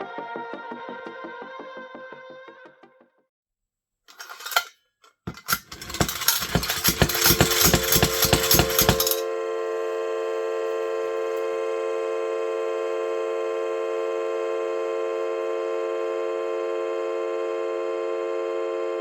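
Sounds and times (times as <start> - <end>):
metallic clatter of tin top: 4.1 - 9.2
spinning top humming: 5.3 - 9.2.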